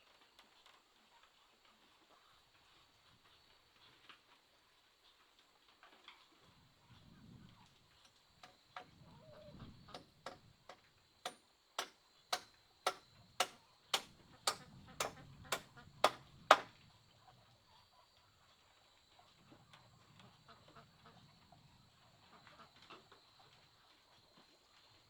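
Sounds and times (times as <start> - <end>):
sharp knocks: 9.9 - 16.7.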